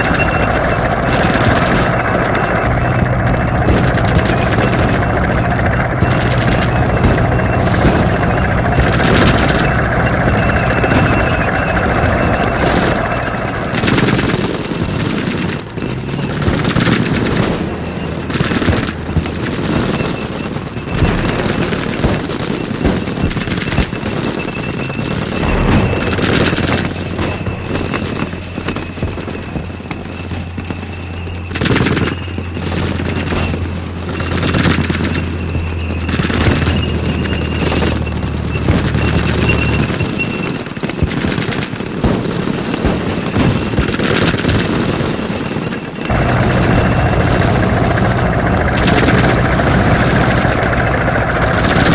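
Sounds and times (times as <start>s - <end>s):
low engine drone: 0.0s - 22.0s, 25.3s - 39.9s, 46.0s - 51.9s
gunfire bursts: 0.0s - 30.0s
explosion booms: 25.3s - 28.0s
thin high whine: 25.3s - 32.2s.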